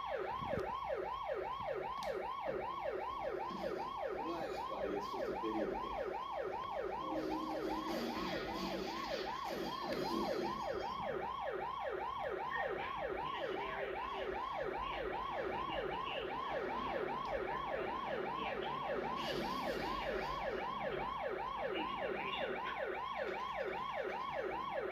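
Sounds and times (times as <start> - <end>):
ambulance siren yelping: 0.0 - 24.9.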